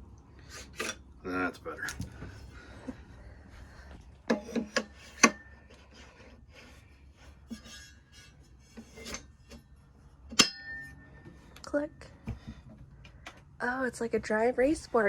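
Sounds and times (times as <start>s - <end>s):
scraping and rubbing: 4.3s - 9.8s.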